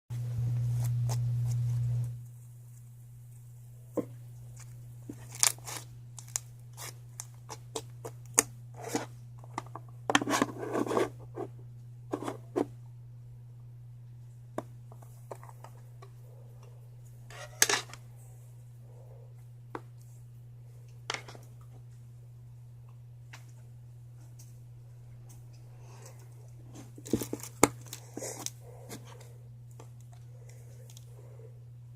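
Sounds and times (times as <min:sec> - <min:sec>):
steady low hum: 0:00.1 - 0:31.9
crinkling: 0:00.5 - 0:11.5, 0:22.8 - 0:31.4.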